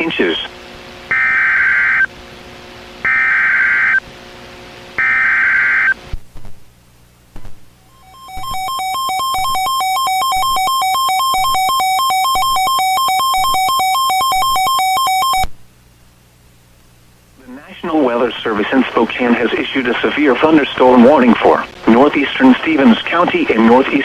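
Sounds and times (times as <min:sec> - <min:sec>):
warbling electronic attention tone: 0:07.9 - 0:15.4
screeching digital data bursts: 0:08.0 - 0:15.4.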